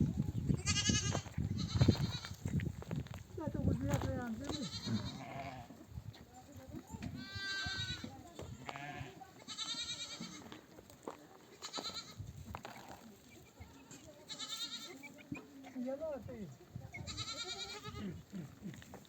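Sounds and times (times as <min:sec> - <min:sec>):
sheep bleating: 0:00.6 - 0:02.3, 0:04.4 - 0:05.8, 0:07.2 - 0:10.6, 0:11.6 - 0:12.2, 0:13.6 - 0:15.1, 0:17.0 - 0:18.5.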